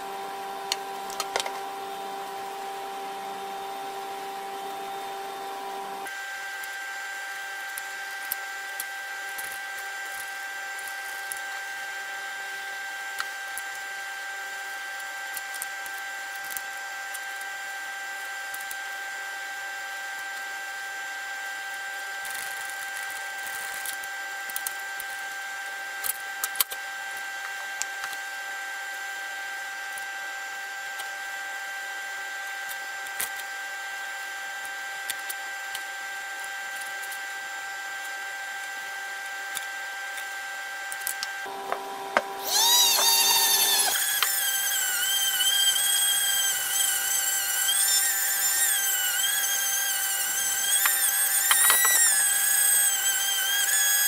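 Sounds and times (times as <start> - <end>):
power tool motor whining: 41.1 - 54.0.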